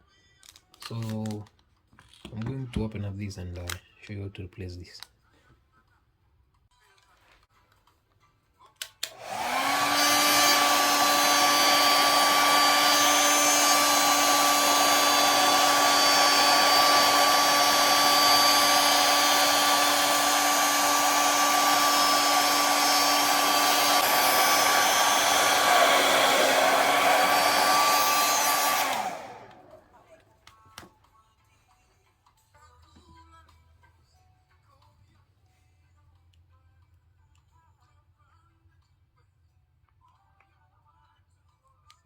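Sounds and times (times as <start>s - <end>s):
hot-air blower fan whine: 9.0s - 30.1s.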